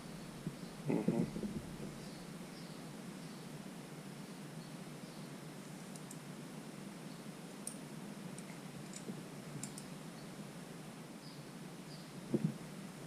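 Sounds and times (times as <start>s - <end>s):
steady low hum: 0.0s - 13.0s
soft thump: 12.3s - 12.6s.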